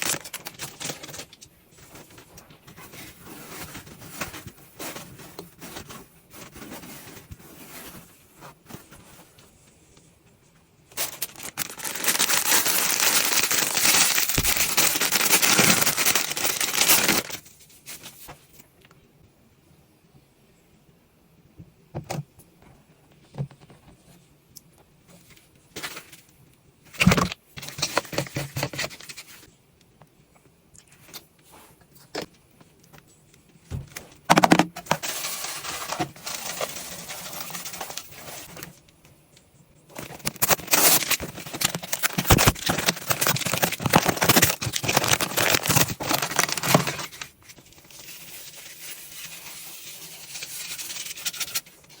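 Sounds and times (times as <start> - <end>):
granules pouring and scraping: 0.0 - 9.4, 34.8 - 38.7
containers clicking and knocking: 34.3 - 35.2.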